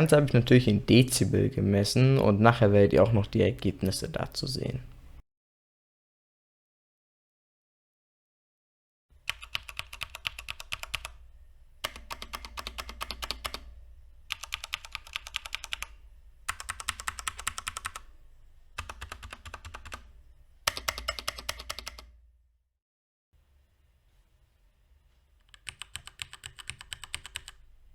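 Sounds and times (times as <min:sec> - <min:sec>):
typing on mechanical keyboard: 0:09.3 - 0:11.1, 0:11.8 - 0:13.7, 0:14.3 - 0:15.9, 0:16.5 - 0:18.0, 0:18.8 - 0:20.0, 0:20.7 - 0:22.1, 0:25.5 - 0:27.6.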